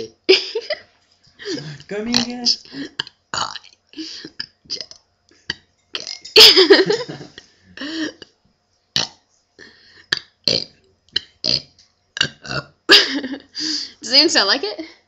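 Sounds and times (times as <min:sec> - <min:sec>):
girl burping: 0:06.0 - 0:07.1, 0:12.2 - 0:12.8.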